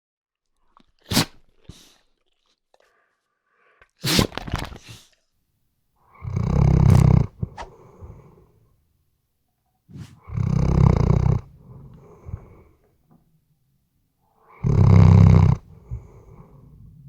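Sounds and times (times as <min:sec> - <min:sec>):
dog snorting: 0:06.2 - 0:08.4, 0:09.9 - 0:12.7, 0:14.5 - 0:16.6.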